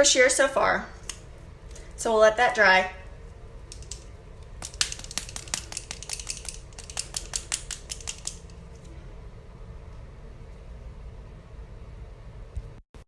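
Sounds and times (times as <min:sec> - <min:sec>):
computer keyboard typing: 0:04.6 - 0:08.5.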